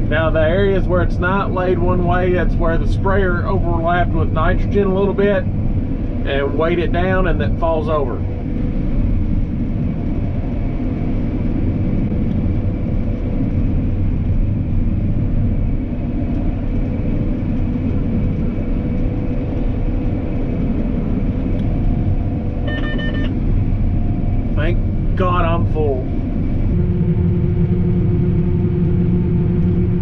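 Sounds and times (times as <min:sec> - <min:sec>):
harvest machine engine drone: 0:00.0 - 0:30.0
electronic beeps: 0:22.6 - 0:23.3.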